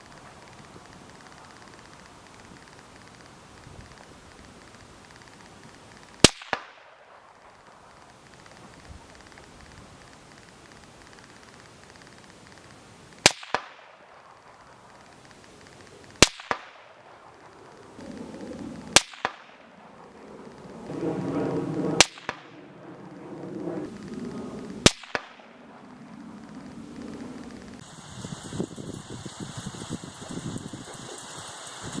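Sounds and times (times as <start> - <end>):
sharp echo of gunshot: 6.2 - 7.8, 13.2 - 14.7, 16.2 - 17.6, 18.9 - 20.2, 21.2 - 22.9, 23.8 - 26.2
rifle shots: 6.2 - 8.2, 13.2 - 15.6, 16.2 - 27.6
low background rumble: 13.9 - 31.4.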